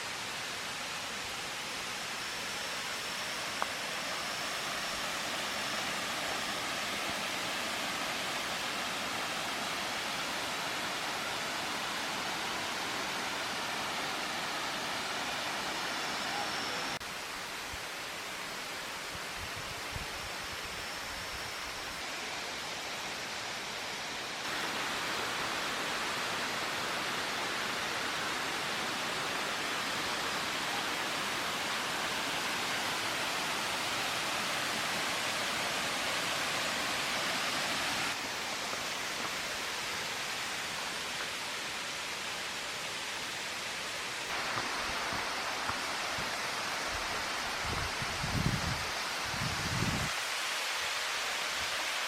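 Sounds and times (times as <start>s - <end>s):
waterfall crashing down: 44.0s - 48.2s.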